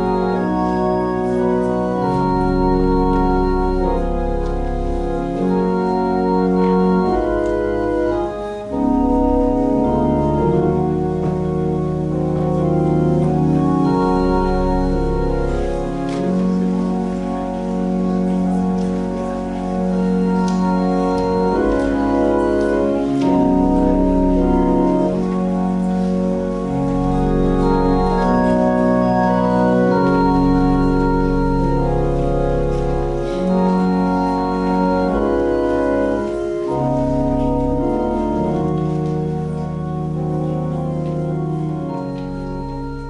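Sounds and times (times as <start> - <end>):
organ chords: 0.0 - 43.0.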